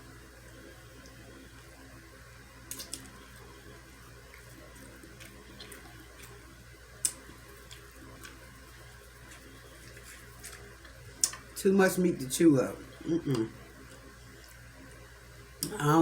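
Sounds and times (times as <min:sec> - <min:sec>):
steady low hum: 0:00.0 - 0:16.0
wet chewing mouth smacks: 0:02.7 - 0:03.1, 0:07.0 - 0:08.4, 0:09.3 - 0:11.5.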